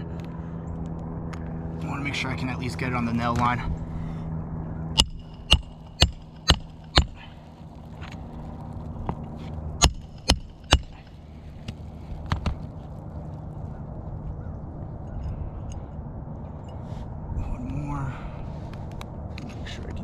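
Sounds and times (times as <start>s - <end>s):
hammer striking nail: 5.0s - 7.2s, 9.8s - 11.0s.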